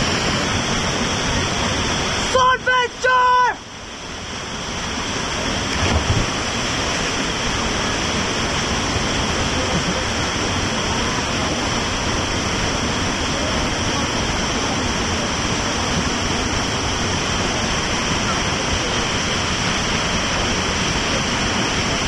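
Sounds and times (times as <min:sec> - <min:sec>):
waterfall rushing: 0:00.0 - 0:22.0
low thump: 0:05.8 - 0:06.4.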